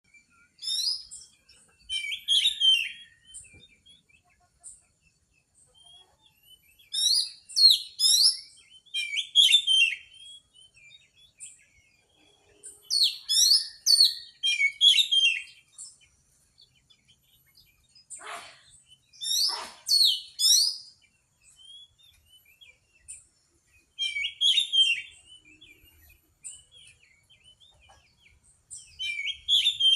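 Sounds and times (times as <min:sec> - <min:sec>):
bird singing rapid chattering phrases: 0:00.1 - 0:29.9
harsh low bird calls: 0:18.0 - 0:21.0.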